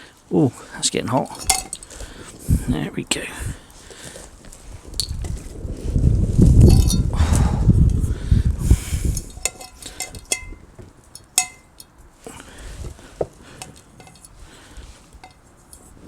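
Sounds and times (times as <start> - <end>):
metal cookware clinking: 1.3 - 2.0, 6.7 - 7.1, 9.2 - 10.6, 11.2 - 11.8, 13.6 - 14.4, 15.1 - 15.4.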